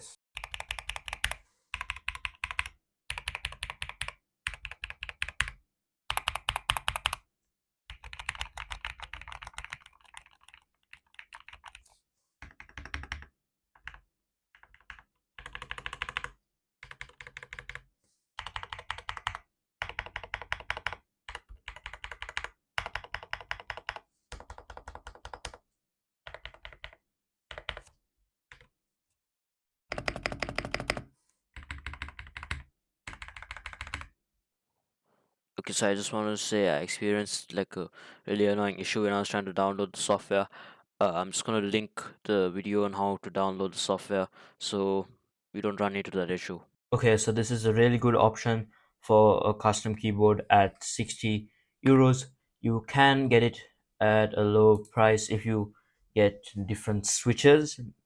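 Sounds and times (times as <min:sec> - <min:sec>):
mechanical keyboard typing: 0:00.4 - 0:07.2, 0:07.9 - 0:11.8, 0:12.4 - 0:14.0, 0:14.6 - 0:17.8, 0:18.4 - 0:25.6, 0:26.3 - 0:27.8, 0:29.9 - 0:34.1.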